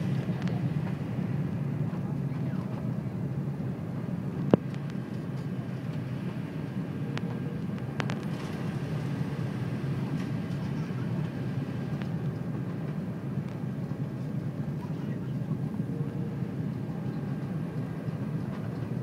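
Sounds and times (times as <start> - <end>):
airliner cabin rumble: 0.0 - 19.0.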